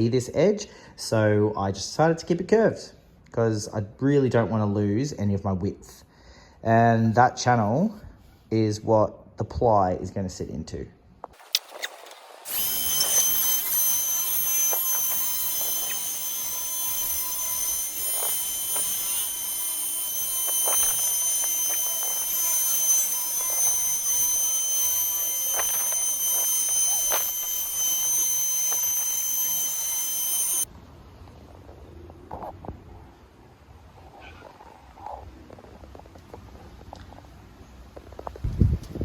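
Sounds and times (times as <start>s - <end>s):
electric router motor whine: 11.4s - 30.7s.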